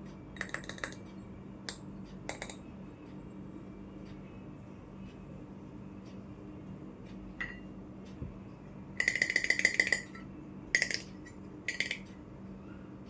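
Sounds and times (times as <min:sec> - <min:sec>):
toy kitchenware clinking: 0:00.4 - 0:01.0, 0:02.3 - 0:02.6, 0:09.0 - 0:10.2, 0:10.8 - 0:12.1.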